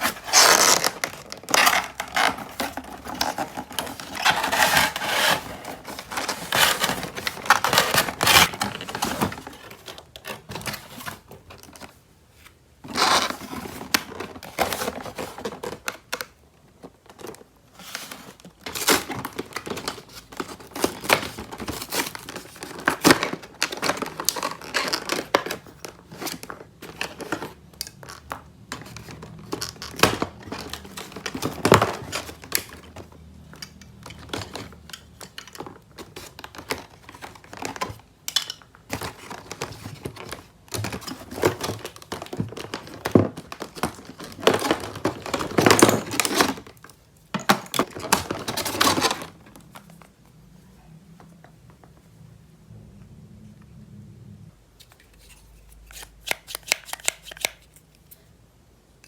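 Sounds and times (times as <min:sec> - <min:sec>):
packaging tearing and crinkling: 0:00.0 - 0:11.2.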